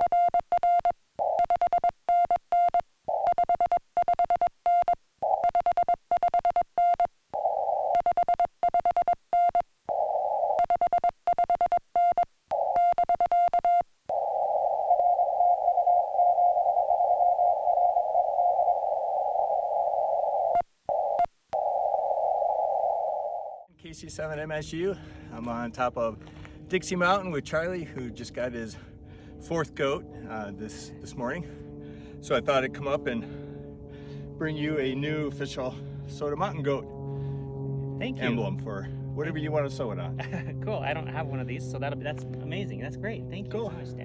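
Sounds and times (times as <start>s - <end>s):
morse code tone: 0.0s - 23.6s.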